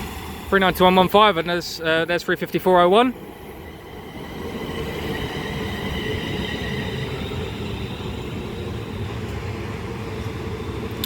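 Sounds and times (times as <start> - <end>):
faint high whine: 0.0 - 11.0
train wheels rumbling on rail: 0.0 - 11.0.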